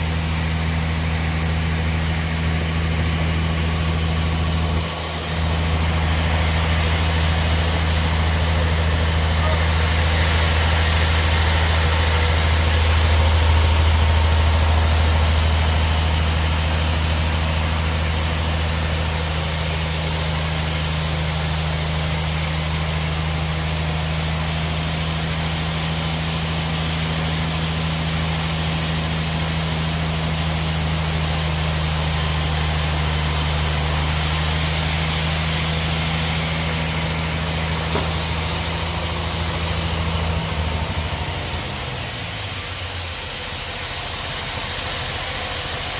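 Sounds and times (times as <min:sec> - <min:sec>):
sawmill machine hum: 0:00.0 - 0:45.9
saw hiss: 0:14.6 - 0:41.2.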